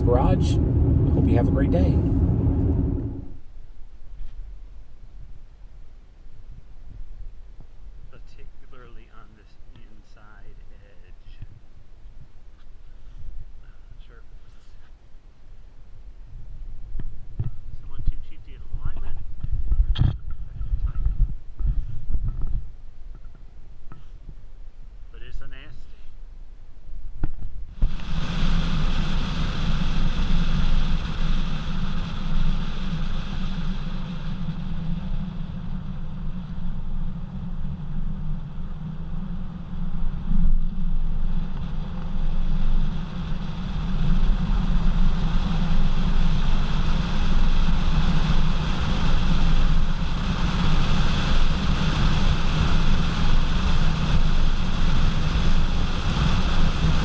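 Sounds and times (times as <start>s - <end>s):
wind buffeting microphone: 0.0s - 3.4s, 16.2s - 23.4s
tire road roar: 0.0s - 3.5s, 27.7s - 57.0s.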